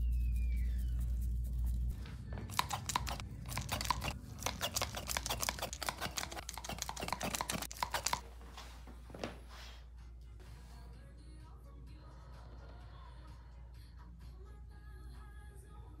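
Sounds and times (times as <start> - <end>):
wet clicks of skin massage: 2.5 - 8.2.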